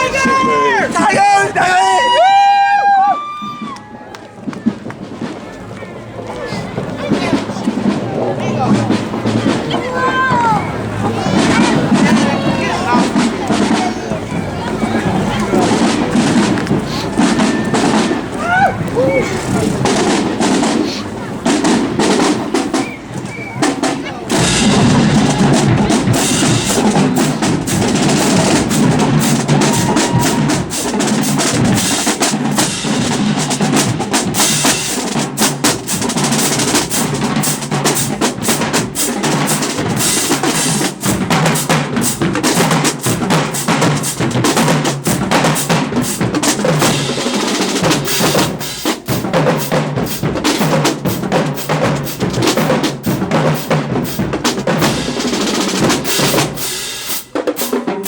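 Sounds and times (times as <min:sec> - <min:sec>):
snare drums rolling: 0:00.0 - 0:58.0
bass drum hits: 0:24.3 - 0:34.0.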